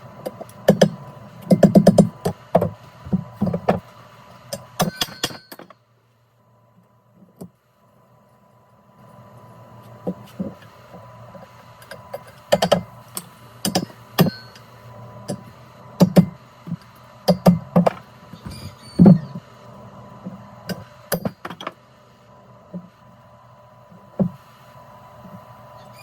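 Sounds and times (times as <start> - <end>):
steady low hum: 0.0 - 26.0
sharp knocks and clicks: 0.3 - 3.8, 11.8 - 14.4, 17.3 - 18.0.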